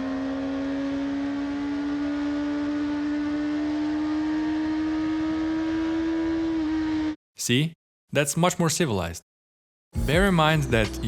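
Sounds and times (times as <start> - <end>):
muffled motorcycle engine cruising: 0.0 - 7.2.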